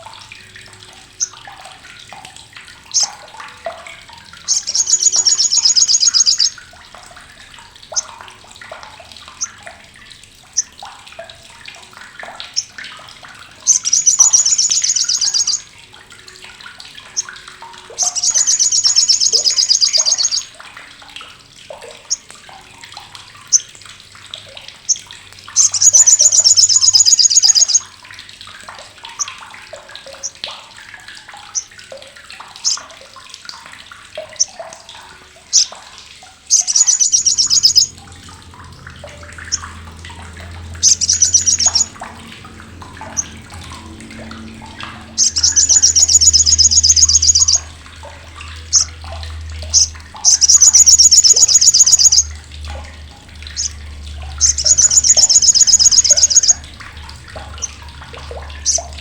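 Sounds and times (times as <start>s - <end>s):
bird chattering rattle call: 4.5s - 6.6s, 13.7s - 15.6s, 18.0s - 20.4s, 25.6s - 27.8s, 36.5s - 37.9s, 40.8s - 41.9s, 45.2s - 47.6s, 49.7s - 52.3s, 54.4s - 56.6s.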